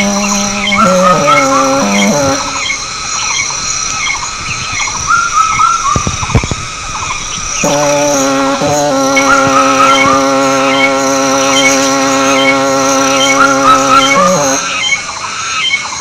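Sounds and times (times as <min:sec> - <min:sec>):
sustained music chords: 0:07.4 - 0:15.1.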